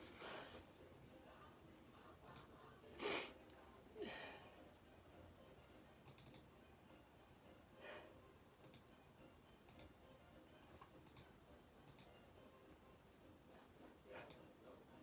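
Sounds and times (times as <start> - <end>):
soft breath: 0.0 - 0.7
computer mouse clicks: 6.0 - 6.5, 8.6 - 8.9, 9.7 - 9.9, 10.8 - 12.2, 14.2 - 14.4.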